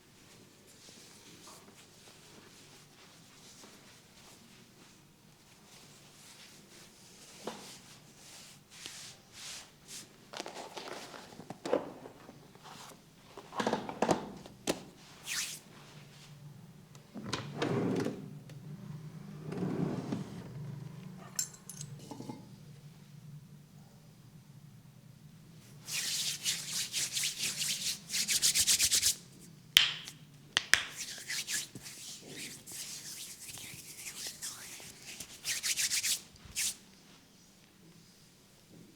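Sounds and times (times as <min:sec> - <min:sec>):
hands rubbing over hair: 0:15.2 - 0:15.7, 0:25.7 - 0:36.8.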